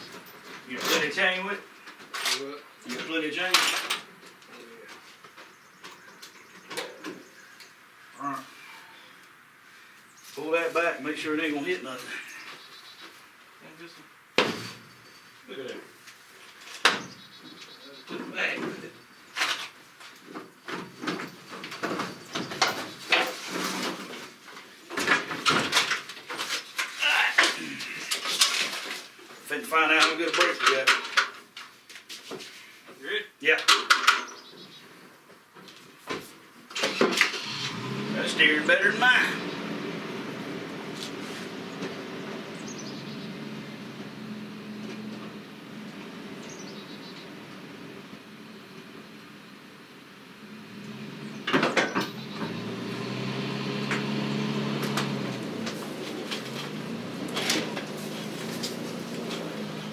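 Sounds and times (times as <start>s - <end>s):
irregular knocks clanks and scrapes: 18.2s - 33.0s, 53.9s - 59.9s
truck engine running low: 37.4s - 59.9s.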